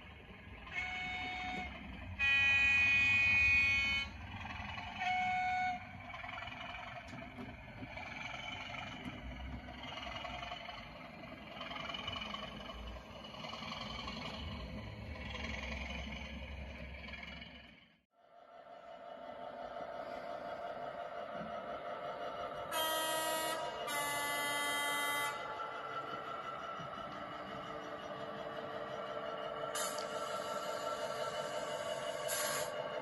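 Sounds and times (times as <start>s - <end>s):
model train horn blasts: 0.7s - 4.2s, 22.7s - 25.5s
model locomotive engine running: 18.4s - 33.0s.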